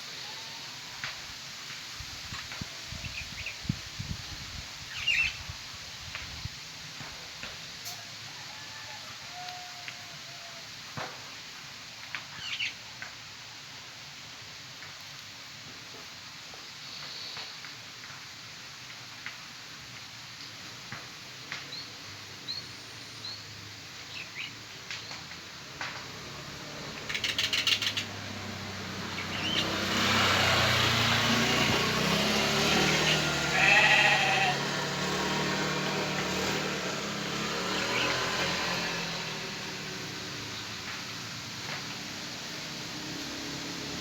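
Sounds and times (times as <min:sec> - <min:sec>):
broad rushing noise: 0:25.8 - 0:44.0
sheep bleating: 0:33.1 - 0:34.7.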